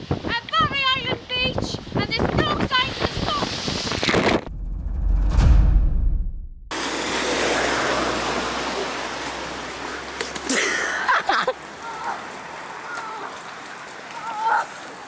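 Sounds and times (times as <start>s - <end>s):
water rushing and splashing: 6.7s - 15.0s.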